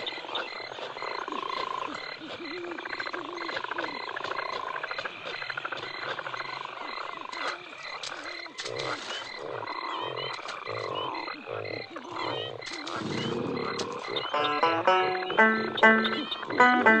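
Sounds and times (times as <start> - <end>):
frogs croaking: 0.0 - 17.0
high pulsing chirps: 13.2 - 17.0.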